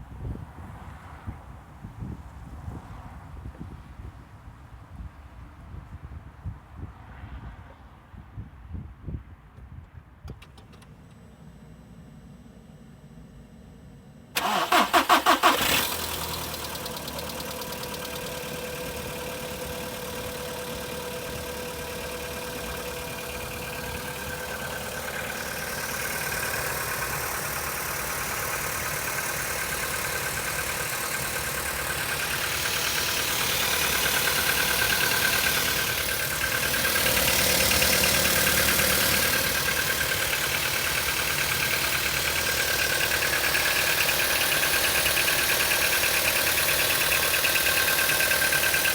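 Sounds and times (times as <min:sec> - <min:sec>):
starter motor cranking: 0:14.4 - 0:48.9
engine idling with knock: 0:15.7 - 0:48.9.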